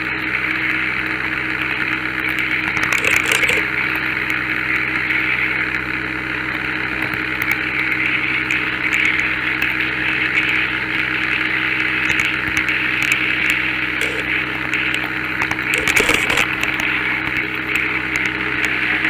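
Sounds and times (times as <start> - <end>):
model train motor hum: 0.0 - 19.0
wheels rolling on rails: 2.4 - 4.4, 6.9 - 19.0.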